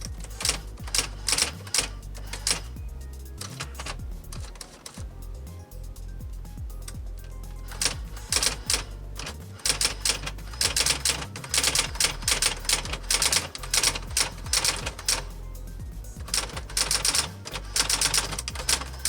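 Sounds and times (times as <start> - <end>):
electric typewriter typing: 0.4 - 2.6, 7.7 - 15.2, 16.3 - 19.0.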